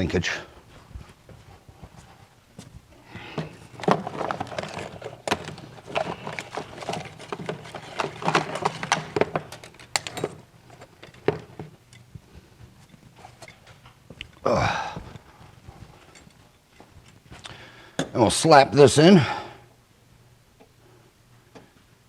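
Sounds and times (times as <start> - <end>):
tools and parts clattering: 3.2 - 12.1, 12.8 - 14.0, 16.0 - 17.5.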